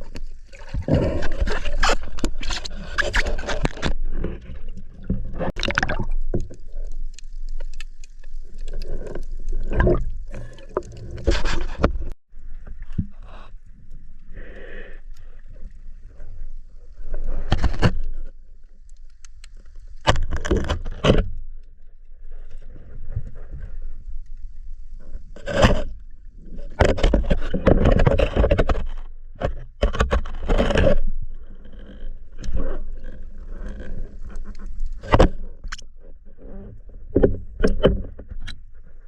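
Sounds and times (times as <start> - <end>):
water splashes: 0.0 - 13.0
water sloshing and gurgling: 0.0 - 39.0.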